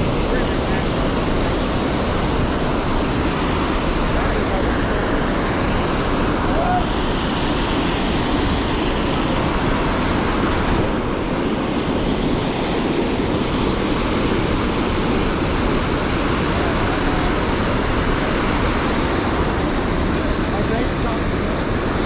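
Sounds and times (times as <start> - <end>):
river water flowing fast: 0.0 - 22.0.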